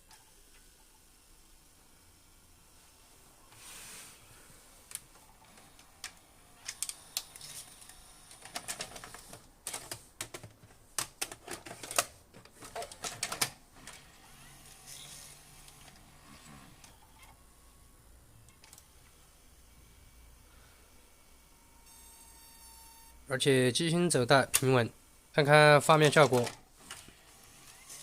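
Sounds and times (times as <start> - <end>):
tape mechanism clicking and clunking: 4.9 - 14.1, 26.0 - 27.9.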